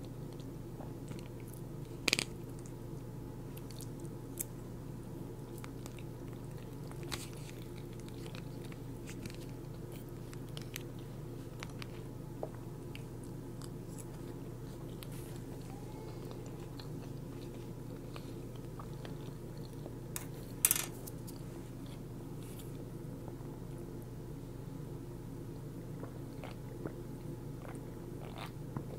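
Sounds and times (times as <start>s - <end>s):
steady low hum: 0.0s - 28.9s
chewing and biting fried food: 5.4s - 20.0s, 27.6s - 28.9s.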